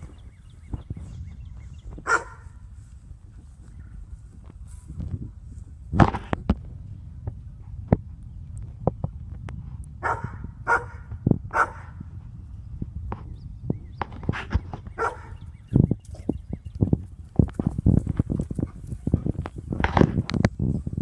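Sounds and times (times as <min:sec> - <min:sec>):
dog barking: 0:02.0 - 0:02.6, 0:10.0 - 0:12.0, 0:15.0 - 0:15.4.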